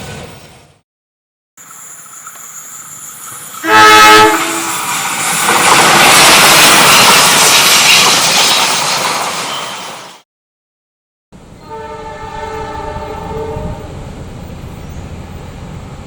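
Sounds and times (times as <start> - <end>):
train passing: 1.6 - 10.2, 11.4 - 16.0
locomotive horn blast: 3.6 - 4.8, 11.6 - 14.0.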